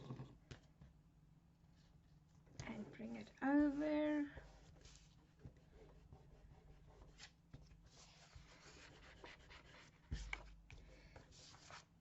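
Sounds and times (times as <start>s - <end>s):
paper rustling and rubbing: 4.5s - 10.6s, 11.3s - 12.0s.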